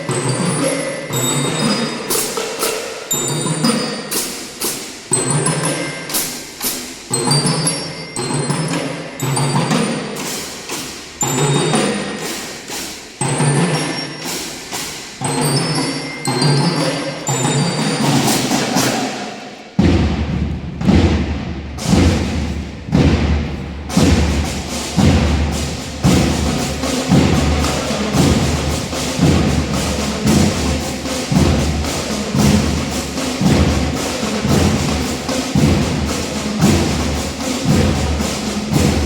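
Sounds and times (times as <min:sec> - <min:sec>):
higher percussion hits: 0:00.0 - 0:39.0
bands playing: 0:13.2 - 0:39.0
heavy low drum beat: 0:19.8 - 0:39.0.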